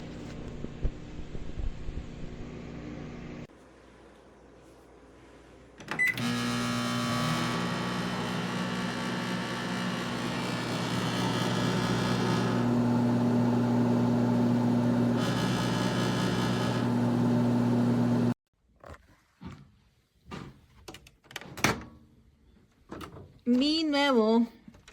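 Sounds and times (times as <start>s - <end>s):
microwave oven humming: 0.0s - 3.5s, 5.9s - 18.4s
microwave click and beep: 5.9s - 6.4s.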